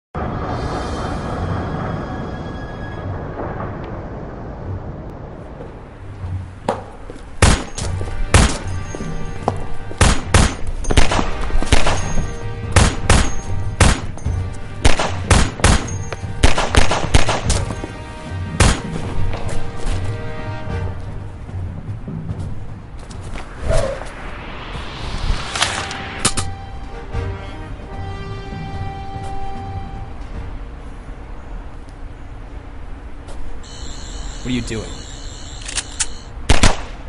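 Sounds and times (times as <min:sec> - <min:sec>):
dramatic film score music: 0:00.2 - 0:36.9
loud sharp bangs: 0:10.0 - 0:14.2, 0:14.8 - 0:17.7.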